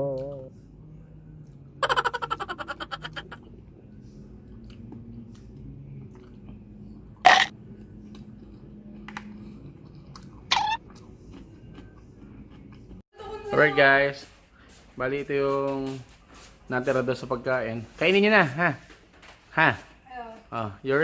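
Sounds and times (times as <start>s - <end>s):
person chewing food: 4.3s - 13.0s.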